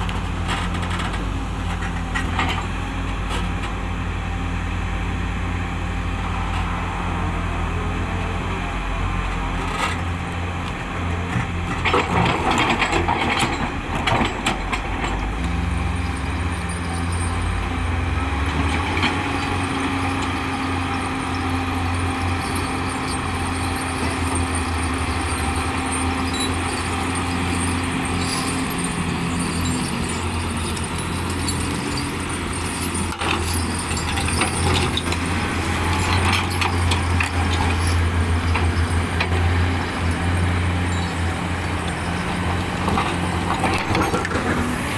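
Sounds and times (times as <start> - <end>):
rock and metal clattering and scraping: 0.0 - 3.8, 9.3 - 44.9
heavy diesel engine running: 0.0 - 44.9.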